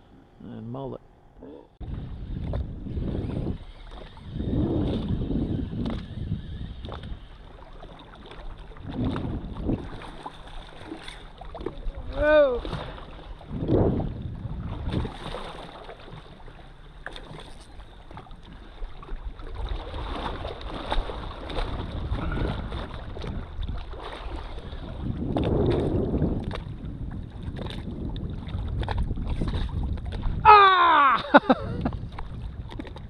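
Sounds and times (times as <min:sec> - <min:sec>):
water moving around kayak: 0:01.1 - 0:33.0
wind buffeting microphone: 0:01.8 - 0:16.6, 0:18.0 - 0:33.0.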